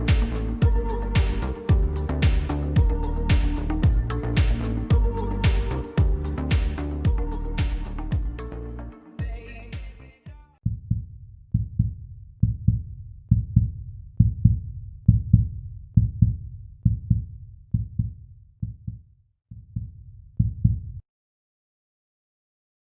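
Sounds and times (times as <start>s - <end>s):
muffled bass drum beats: 0.0s - 8.5s.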